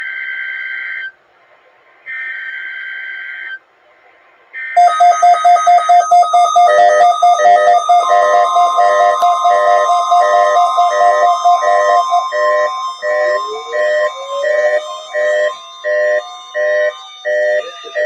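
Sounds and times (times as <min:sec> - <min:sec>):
shrill digital data tones: 0:04.8 - 0:18.0
music with fast repeating notes: 0:06.9 - 0:18.0.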